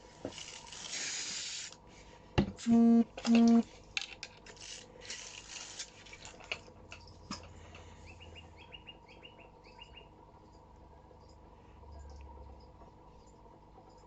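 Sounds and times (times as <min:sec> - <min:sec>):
bird chirping: 0:08.0 - 0:10.2.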